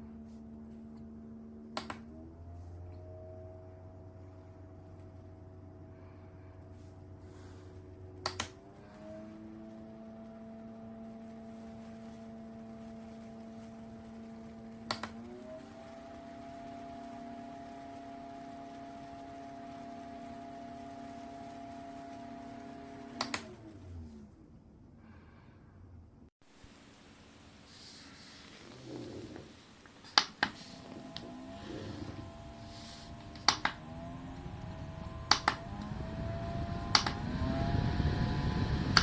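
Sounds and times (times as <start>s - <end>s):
desk fan motor hum: 0.0s - 24.4s, 26.5s - 39.0s
fan button clicks: 1.8s - 2.1s, 8.2s - 8.6s, 14.9s - 15.2s, 23.2s - 23.6s, 30.1s - 32.4s, 33.1s - 37.6s.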